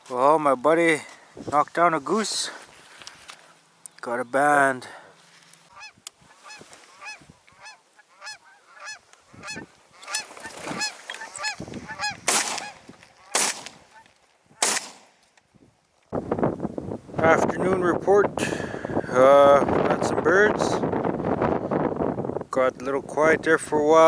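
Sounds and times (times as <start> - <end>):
geese honking: 5.7 - 14.8.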